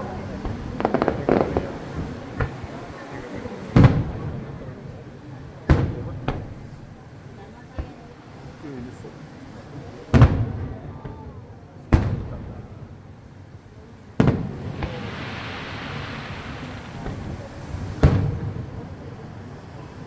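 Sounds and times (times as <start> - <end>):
firework shells bursting: 0.0 - 2.7, 14.1 - 19.6
hissing crackle: 0.0 - 2.7, 14.1 - 19.6.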